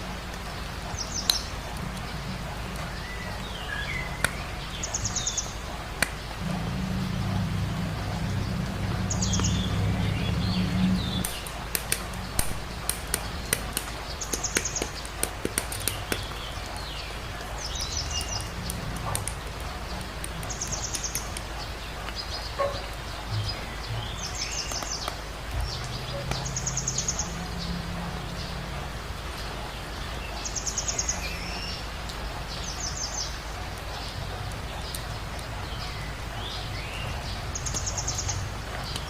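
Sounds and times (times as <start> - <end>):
bird chirping: 0.4 - 28.6
low hum: 5.6 - 14.2
sharp plastic clicks: 11.2 - 16.8.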